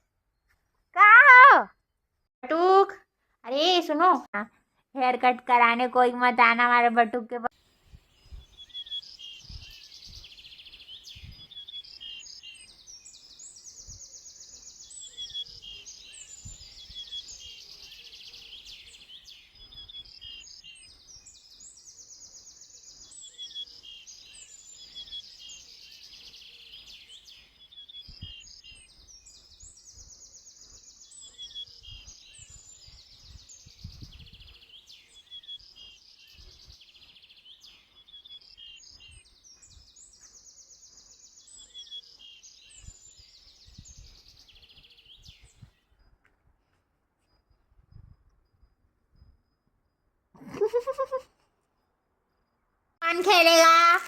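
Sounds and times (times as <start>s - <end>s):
birds singing: 7.6s - 46.3s.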